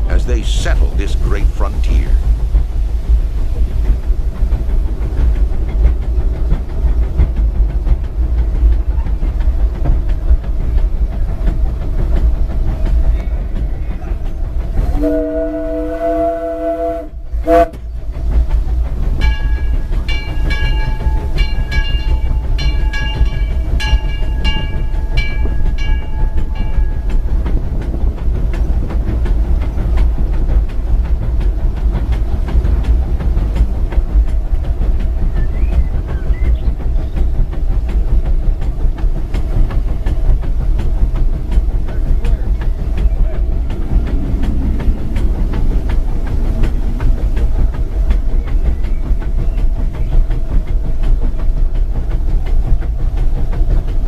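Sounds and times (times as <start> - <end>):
engine and wheels rumbling on rails: 0.0 - 54.0
steam locomotive whistle chord: 14.9 - 17.8.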